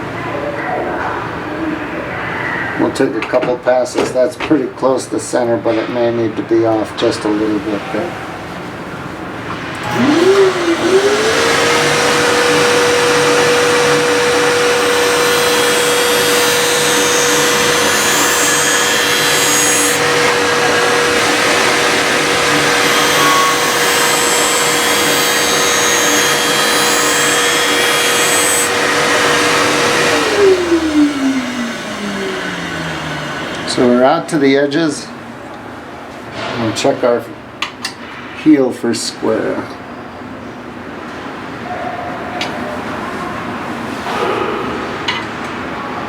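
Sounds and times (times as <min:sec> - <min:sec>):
grinding wheel motor whine: 0:09.4 - 0:34.8.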